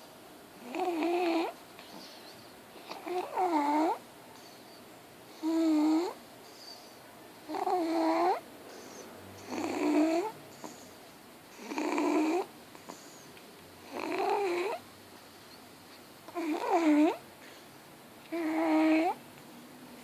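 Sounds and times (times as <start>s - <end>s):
squeaky snoring: 0.6s - 1.6s, 2.9s - 4.0s, 5.4s - 6.8s, 7.5s - 10.9s, 11.6s - 12.5s, 13.8s - 14.8s, 16.3s - 17.2s, 18.3s - 19.2s.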